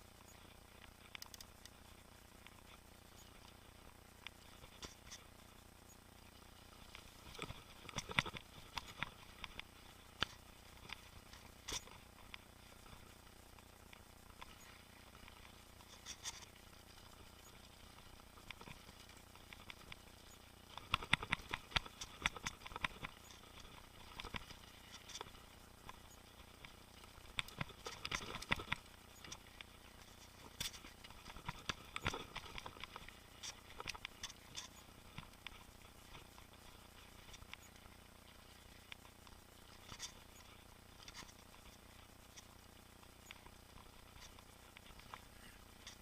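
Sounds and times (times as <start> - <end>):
mountain bike rattling on trail: 0.0 - 46.0.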